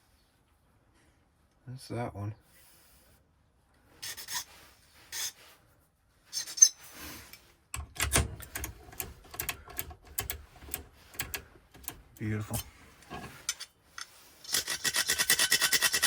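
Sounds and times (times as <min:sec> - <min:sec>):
metal filing strokes: 0:04.0 - 0:05.4
small metal clicks and taps: 0:07.8 - 0:12.0.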